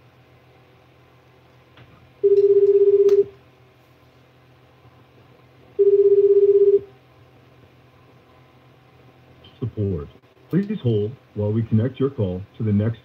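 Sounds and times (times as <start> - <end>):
telephone ringback tone: 2.2 - 3.3, 5.8 - 6.9.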